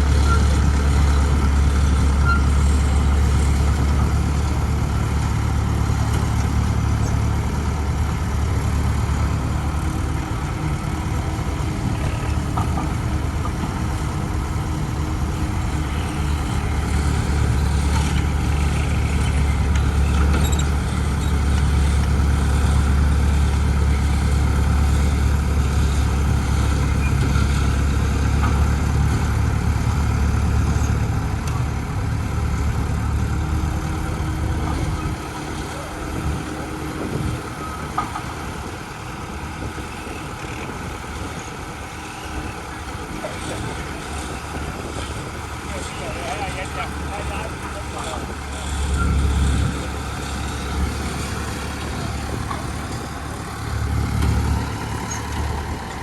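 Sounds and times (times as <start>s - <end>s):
vehicle engine drone: 0.0s - 56.0s.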